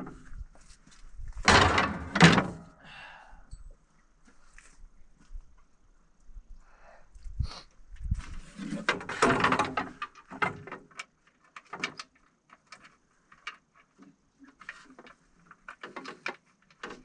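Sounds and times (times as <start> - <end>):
plastic panel rustling and knocking: 1.3 - 2.6, 8.3 - 11.0.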